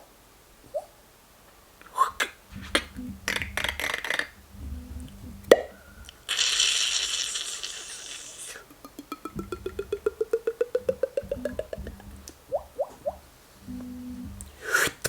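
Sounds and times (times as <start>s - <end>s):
steady hiss: 0.0s - 15.0s
clicks and pops: 2.6s - 6.2s, 8.6s - 15.0s.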